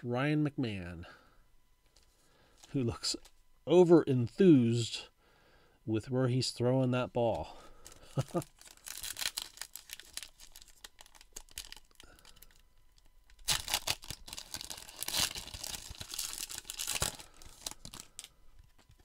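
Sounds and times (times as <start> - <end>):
plastic wrapper crinkling and tearing: 7.8 - 19.0.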